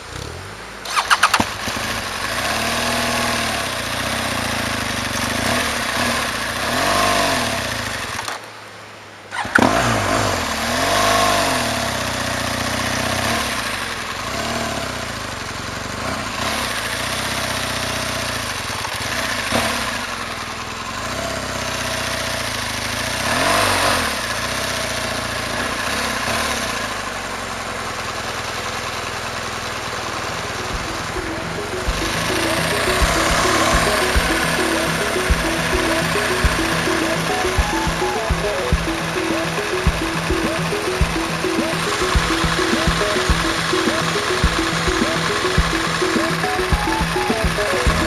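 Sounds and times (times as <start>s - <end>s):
motorcycle engine revving: 0.0s - 8.4s.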